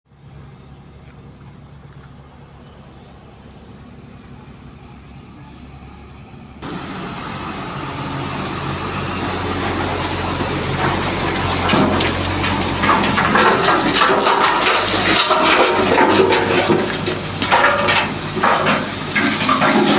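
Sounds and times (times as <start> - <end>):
heavy vehicle engine rumbling: 0.1 - 19.9.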